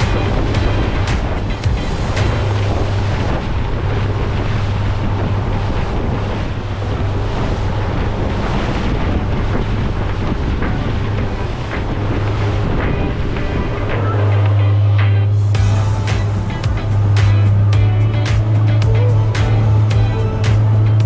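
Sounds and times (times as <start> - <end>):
water rushing past hull: 0.0 - 13.7
wind buffeting microphone: 0.0 - 14.0
boat engine hum: 0.0 - 21.0.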